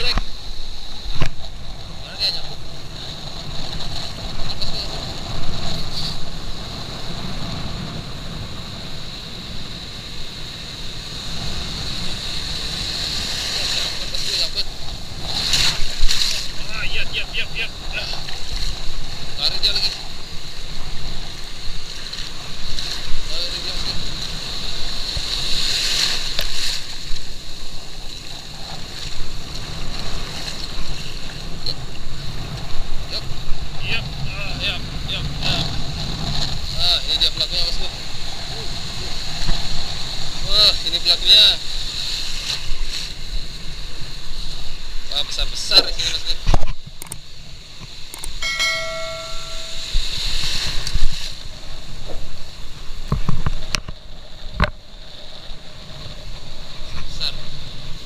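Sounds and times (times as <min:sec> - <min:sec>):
sea water lapping: 0:10.9 - 0:46.5, 0:47.2 - 0:58.0
high-pitched whine: 0:48.4 - 0:50.3.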